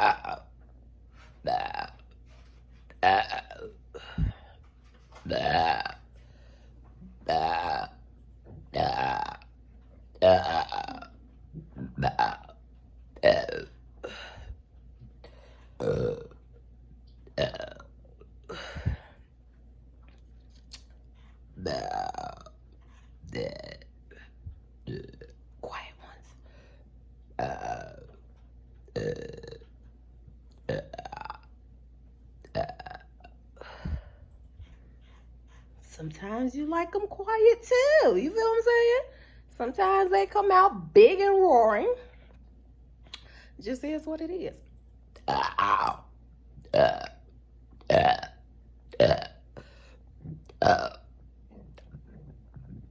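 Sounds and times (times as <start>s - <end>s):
woman burping: 0.0s - 0.5s, 1.4s - 2.1s, 3.0s - 4.5s, 5.3s - 6.0s, 7.2s - 8.0s, 8.7s - 9.5s, 10.2s - 12.6s, 13.2s - 14.5s, 15.8s - 16.4s, 17.4s - 19.2s, 21.6s - 22.6s, 23.3s - 25.4s, 27.4s - 28.2s, 28.9s - 29.6s, 30.7s - 31.5s, 32.5s - 34.1s, 45.2s - 46.1s, 46.7s - 47.2s, 47.9s - 49.4s, 50.5s - 51.1s.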